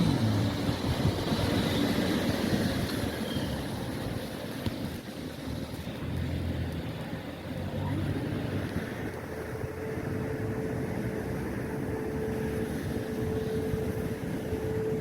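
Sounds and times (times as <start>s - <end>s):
thin steady whine: 6.0s - 15.0s.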